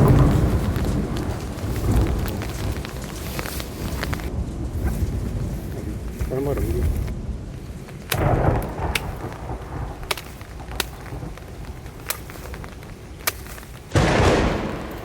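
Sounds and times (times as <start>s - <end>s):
thunder rumbling: 0.0s - 13.2s, 13.8s - 15.0s
steady rain: 0.0s - 15.0s
sharp clicks: 7.9s - 15.0s.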